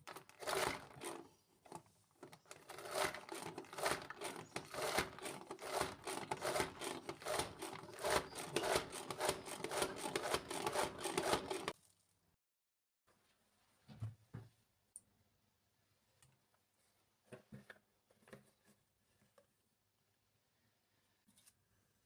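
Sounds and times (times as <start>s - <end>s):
rubbing and rustling handling noise: 0.0s - 12.1s.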